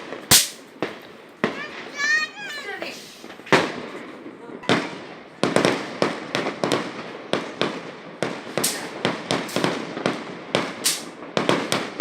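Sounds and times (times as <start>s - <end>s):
firecrackers banging: 0.0s - 12.0s.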